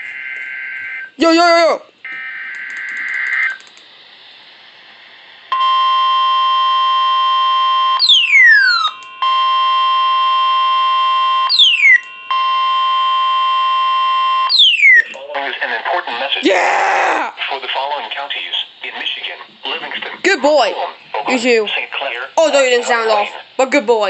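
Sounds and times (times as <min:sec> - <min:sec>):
loud steady alarm tone: 0:00.0 - 0:03.6, 0:05.5 - 0:15.2
high falling chirps: 0:08.0 - 0:09.3, 0:11.4 - 0:15.2.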